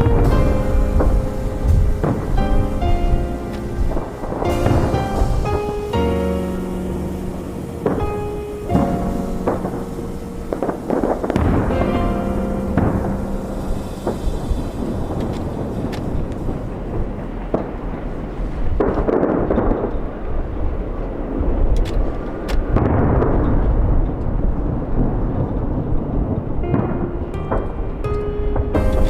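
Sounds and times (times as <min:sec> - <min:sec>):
fireworks booming and cracking: 0:00.0 - 0:29.0.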